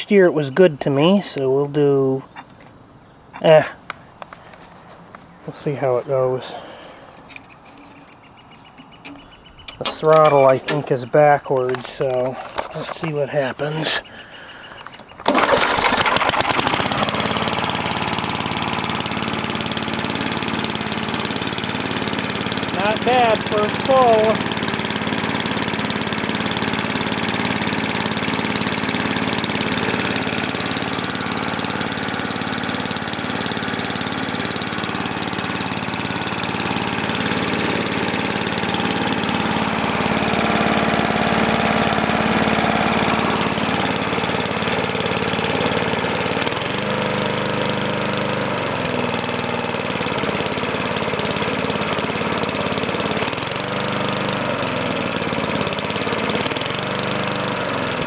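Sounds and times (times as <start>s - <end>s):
person talking: 0.0s - 2.3s, 3.4s - 3.8s, 5.5s - 6.8s, 9.8s - 14.2s, 22.7s - 24.5s
lawn mower engine running: 3.4s - 58.0s.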